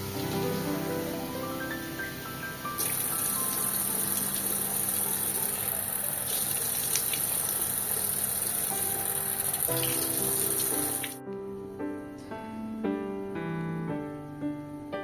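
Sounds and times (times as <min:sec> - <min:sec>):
water running from tap: 0:00.0 - 0:01.3, 0:02.8 - 0:11.2.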